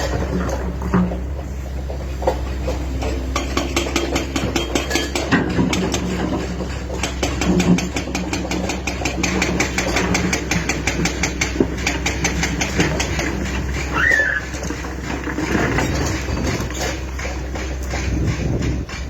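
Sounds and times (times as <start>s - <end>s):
excavator engine running: 0.0s - 19.0s
fast ticking clatter: 3.4s - 19.0s.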